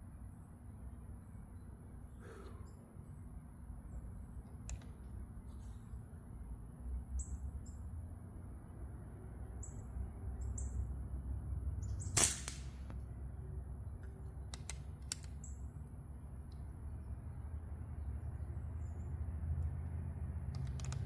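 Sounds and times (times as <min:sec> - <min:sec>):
airgun shot: 0:12.1 - 0:12.9.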